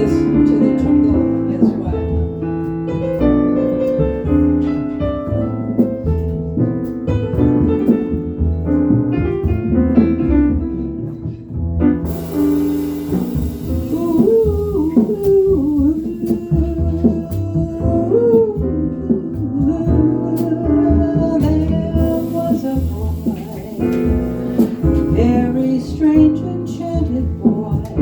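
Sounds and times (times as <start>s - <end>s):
jazz piano: 0.0s - 28.0s
upright bass: 0.0s - 28.0s
cymbals: 12.0s - 17.2s.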